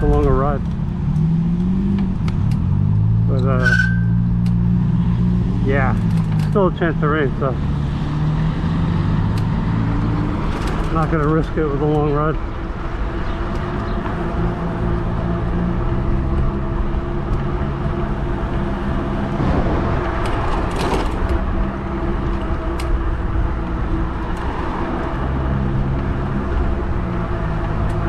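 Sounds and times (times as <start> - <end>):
passing vehicle: 0.0 - 28.0
wind rumble on microphone: 7.9 - 28.0.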